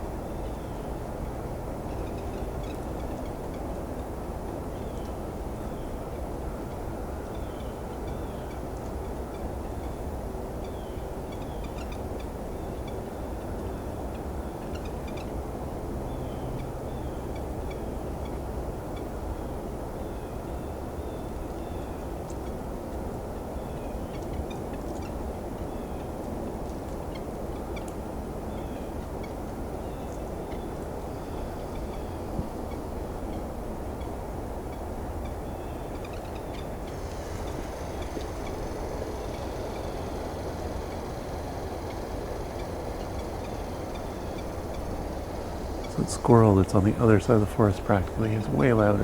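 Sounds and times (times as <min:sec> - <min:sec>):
steady low rumble: 0:37.4 - 0:49.0.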